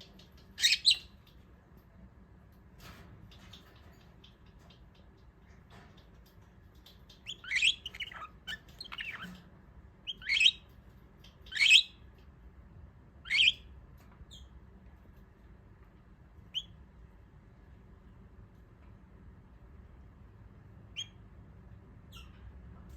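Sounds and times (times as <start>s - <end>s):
budgerigar chirping: 0.6s - 1.1s, 7.2s - 9.4s, 10.1s - 10.7s, 11.4s - 12.0s, 13.2s - 13.7s, 16.5s - 16.8s, 20.9s - 21.2s.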